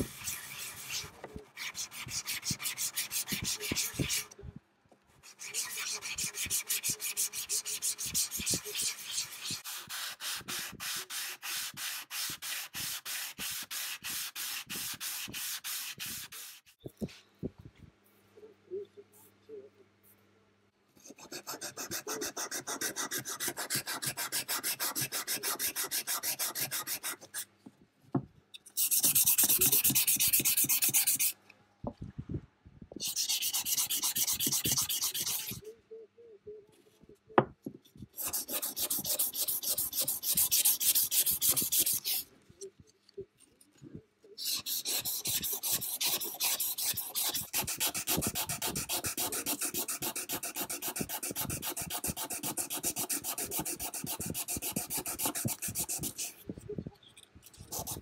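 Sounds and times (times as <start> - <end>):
file scraping metal: 5.3 - 11.9, 28.8 - 31.3, 33.0 - 35.6, 38.2 - 42.3, 44.4 - 56.4, 57.6 - 58.0.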